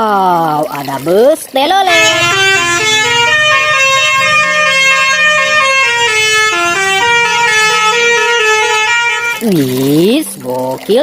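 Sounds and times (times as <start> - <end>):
musical bus horn tune: 1.9 - 9.5.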